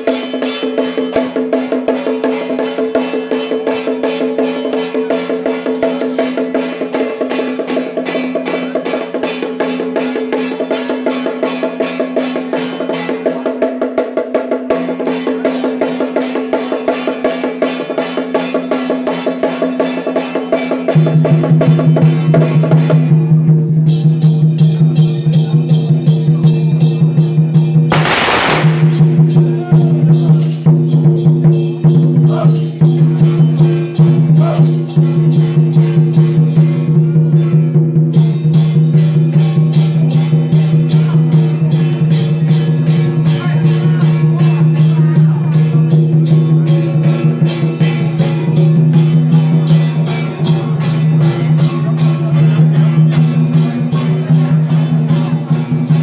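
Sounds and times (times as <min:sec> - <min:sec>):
fast drum strokes: 0:00.0 - 0:56.0
loud burst of noise: 0:27.9 - 0:29.2.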